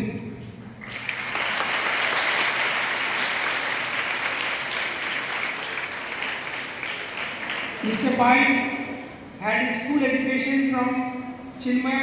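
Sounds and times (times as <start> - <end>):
audience applauding: 0.8 - 8.5.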